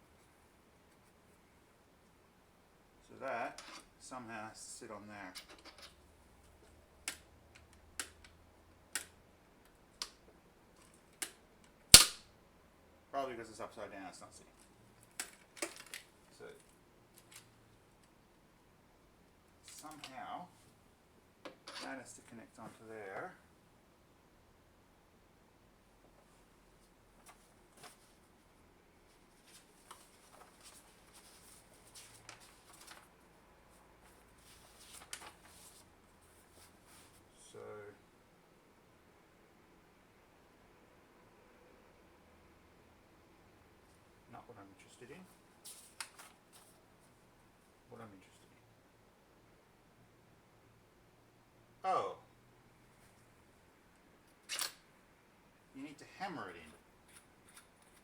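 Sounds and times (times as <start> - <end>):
sharp clicks of metal parts: 11.1 - 12.2.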